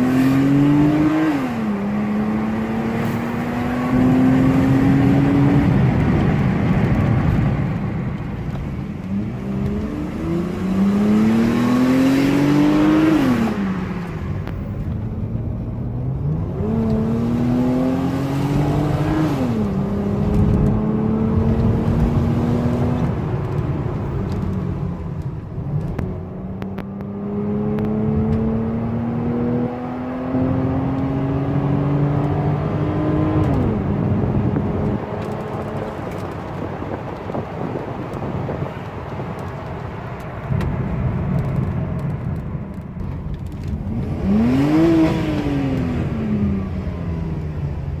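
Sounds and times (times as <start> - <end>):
car engine accelerating: 0.0 - 48.0.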